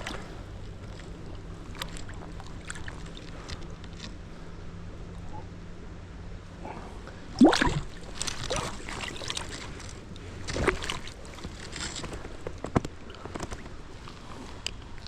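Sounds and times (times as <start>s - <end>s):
running water: 7.4s - 9.6s
water splashing: 7.4s - 9.6s.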